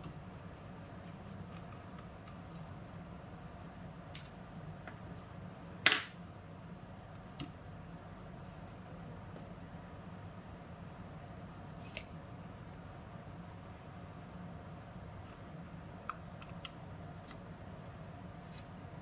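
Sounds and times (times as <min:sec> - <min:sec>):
low steady hum: 0:00.0 - 0:19.0.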